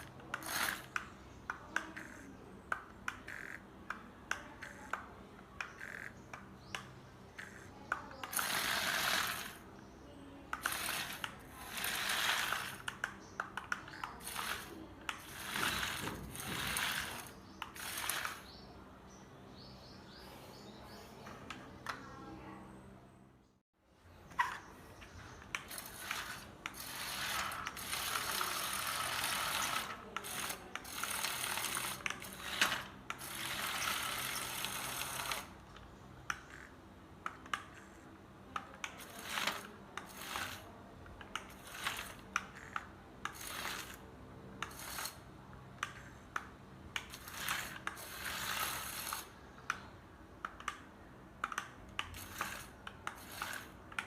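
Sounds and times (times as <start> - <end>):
geared mechanism whirring: 0.0 - 3.7, 5.6 - 9.7, 10.5 - 18.6, 25.4 - 36.7, 38.6 - 49.8, 51.4 - 54.0
sharp clicks: 12.4 - 18.6, 49.0 - 54.0.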